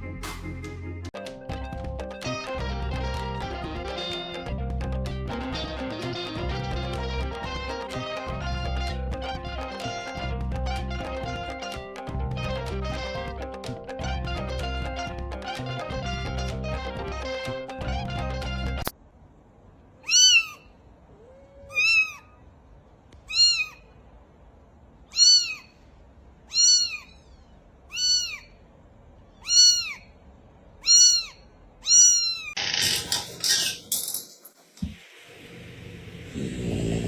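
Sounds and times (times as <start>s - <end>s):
kitten meowing: 20.0s - 22.4s, 23.3s - 23.8s, 25.1s - 25.8s, 26.5s - 28.5s, 29.4s - 30.1s, 30.8s - 32.6s.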